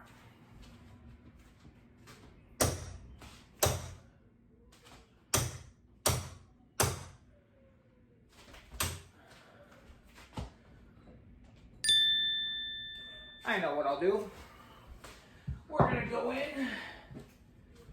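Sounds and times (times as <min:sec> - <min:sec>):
hammer striking metal doorknob: 0:08.8 - 0:09.1.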